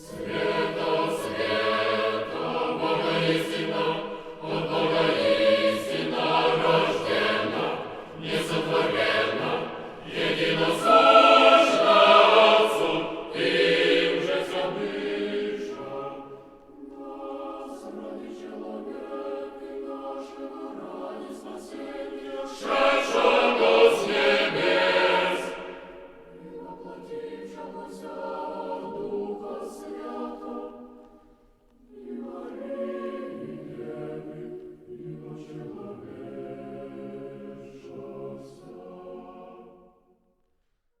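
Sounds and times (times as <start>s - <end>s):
small choir chanting: 0.0s - 40.3s.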